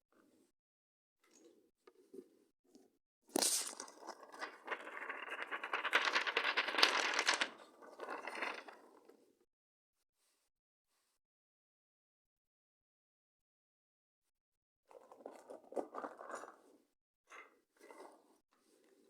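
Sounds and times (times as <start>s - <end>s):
paper or plastic crinkling: 3.4s - 7.5s.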